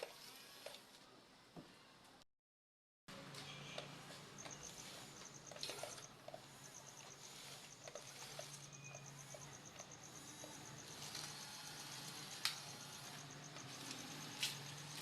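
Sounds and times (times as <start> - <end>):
insect chirping: 4.4 - 15.0.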